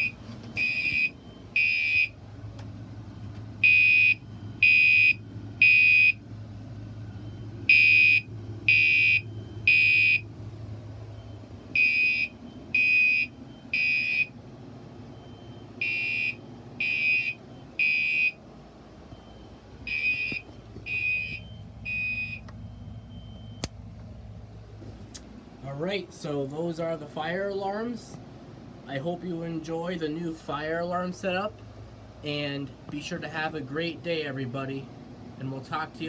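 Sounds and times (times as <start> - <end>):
fire alarm high-pitched beeps: 0.0 - 2.2, 3.6 - 6.2, 7.3 - 10.3, 11.2 - 14.4, 15.1 - 18.4, 19.1 - 23.6.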